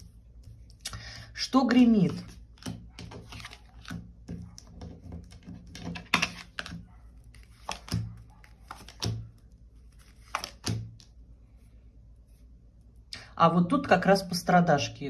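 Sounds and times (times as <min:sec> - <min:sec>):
cards tapping on a table: 0:02.6 - 0:06.8, 0:08.7 - 0:09.2.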